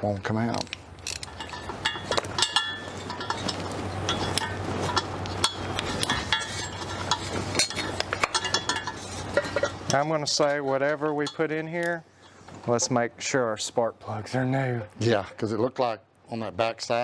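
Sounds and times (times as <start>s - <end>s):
low steady hum: 0.0s - 15.6s
metal tools clinking: 0.4s - 12.4s.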